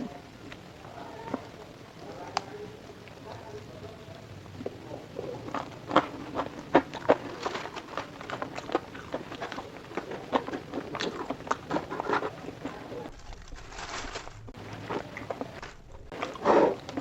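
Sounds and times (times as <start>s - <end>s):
chewing crunchy fried food: 4.5s - 17.0s.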